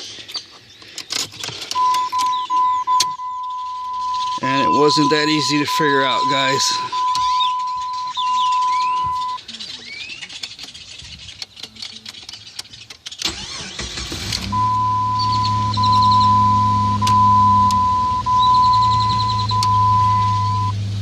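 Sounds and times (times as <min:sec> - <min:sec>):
steady high-pitched tone: 0:03.0 - 0:09.4
car engine cranking and starting: 0:10.1 - 0:21.0
car engine idling: 0:11.7 - 0:21.0.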